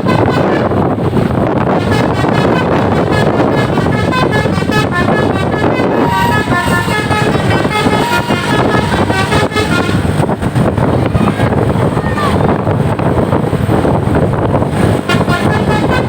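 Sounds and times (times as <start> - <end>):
musical horn playing a tune: 0.0 - 0.8, 1.7 - 10.3, 14.9 - 16.0
bus engine: 0.0 - 16.0
wind noise: 0.0 - 16.0.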